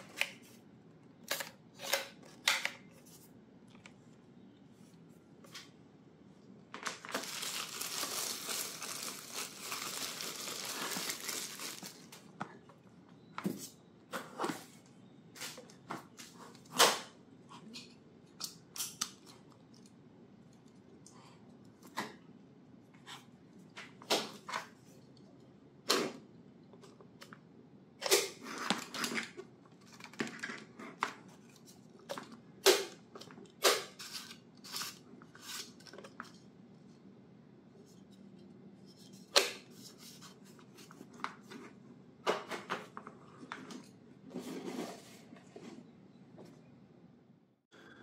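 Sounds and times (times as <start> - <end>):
packaging clicking and rustling: 6.8 - 12.3.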